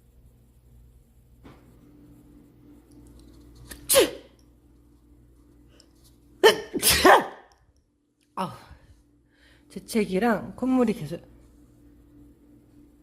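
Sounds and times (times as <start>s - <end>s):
person sneezing: 3.7s - 4.3s, 6.4s - 7.5s.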